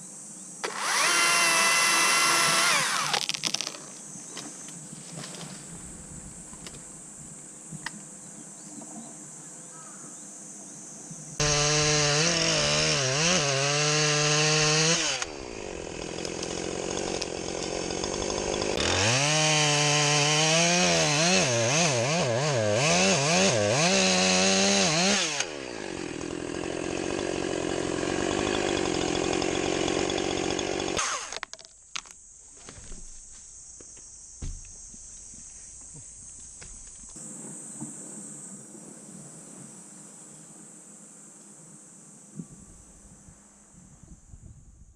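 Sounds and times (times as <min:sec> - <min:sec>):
chainsaw cutting wood: 0:00.6 - 0:03.8, 0:11.4 - 0:32.1.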